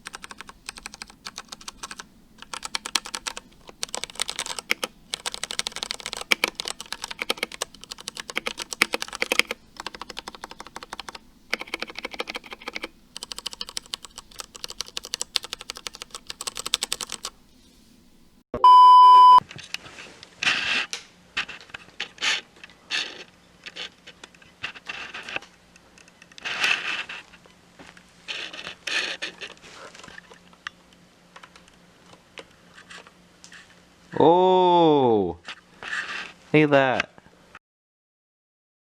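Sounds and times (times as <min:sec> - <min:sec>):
mechanical keyboard clicks: 0:00.0 - 0:17.4
loud beep: 0:18.6 - 0:19.4.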